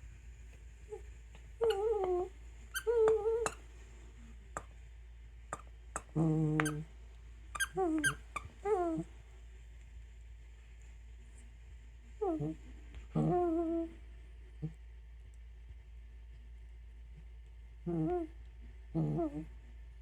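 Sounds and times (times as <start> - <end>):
dog squeaky vocalizations: 1.6 - 3.6, 7.6 - 8.9
squeaky toy squeaks: 1.6 - 3.6, 6.0 - 6.8, 7.6 - 8.5.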